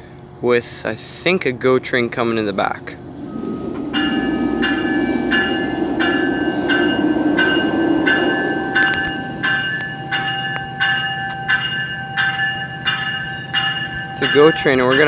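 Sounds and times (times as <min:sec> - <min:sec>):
low train rumble: 0:00.0 - 0:15.0
train bell ringing: 0:03.2 - 0:15.0.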